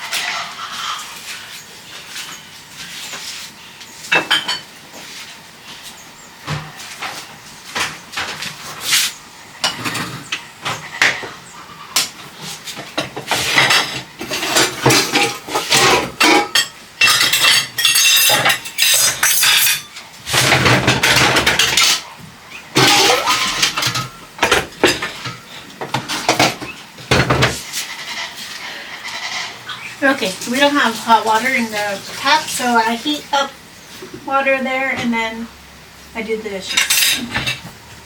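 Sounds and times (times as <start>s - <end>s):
dishes and cutlery clinking: 4.1s - 4.7s, 12.8s - 22.1s, 22.8s - 29.8s, 36.7s - 37.7s.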